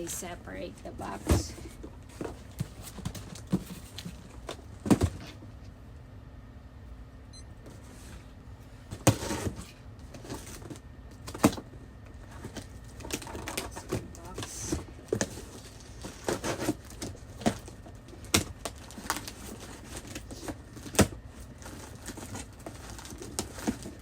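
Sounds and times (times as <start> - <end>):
packaging scraping and rustling: 15.1 - 24.0.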